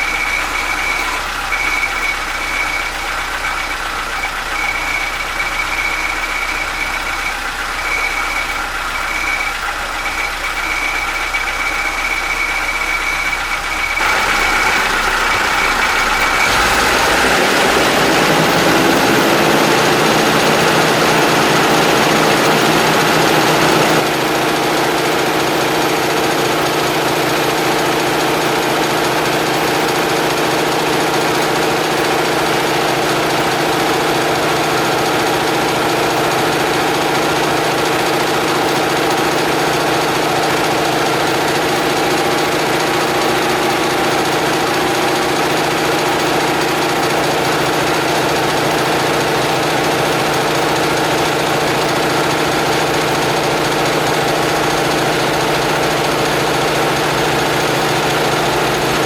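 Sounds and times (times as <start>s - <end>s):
air compressor drone: 0.0s - 59.0s
high steady whine: 0.0s - 59.0s.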